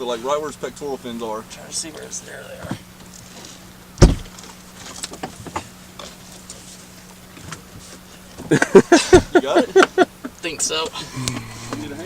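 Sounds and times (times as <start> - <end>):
faint steady hum: 0.0 - 12.0
heavy thump: 4.0 - 4.4.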